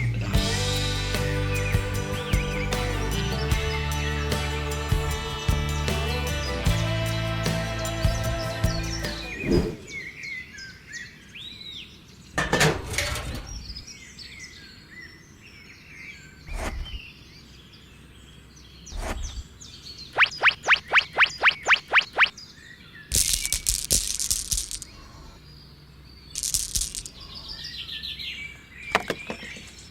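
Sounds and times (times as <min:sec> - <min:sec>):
birds chirping: 0:00.0 - 0:12.4, 0:13.5 - 0:29.9
loud rising chirps: 0:20.1 - 0:22.4.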